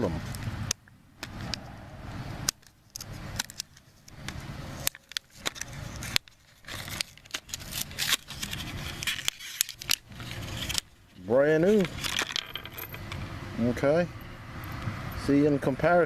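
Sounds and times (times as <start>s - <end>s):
packaging rustling: 4.9s - 10.9s.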